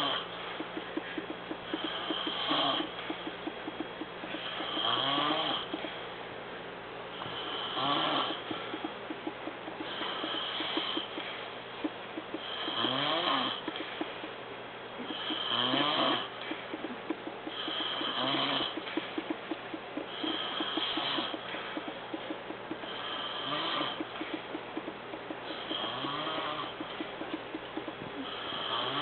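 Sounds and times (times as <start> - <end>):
man snoring: 1.8 - 2.9, 4.4 - 5.7, 7.2 - 8.4, 12.4 - 13.6, 15.1 - 16.3, 17.5 - 18.8, 22.8 - 24.0, 25.6 - 26.7, 28.2 - 29.0.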